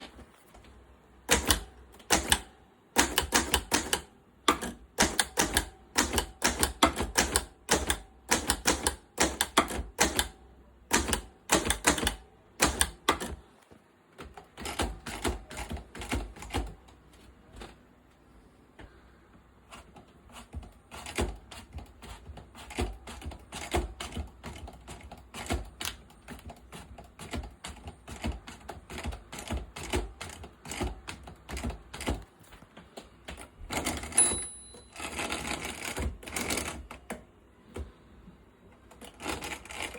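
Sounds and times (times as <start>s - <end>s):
typewriter key strikes: 1.3s - 13.4s.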